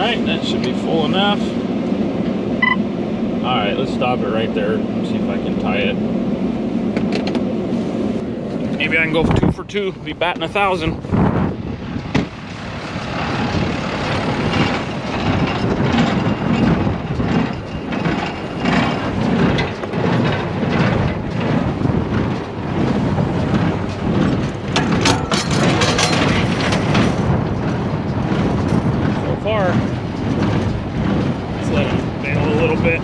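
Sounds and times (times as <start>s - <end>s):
baler mechanical clatter: 11.6s - 33.0s.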